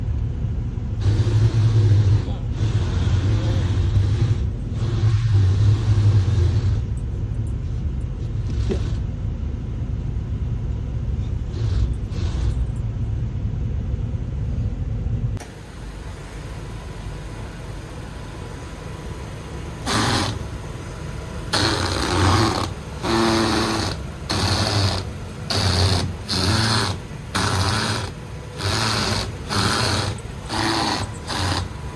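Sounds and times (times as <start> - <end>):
car rumbling over rough concrete: 0.0 - 31.9
harsh buzzing bursts: 19.5 - 31.9.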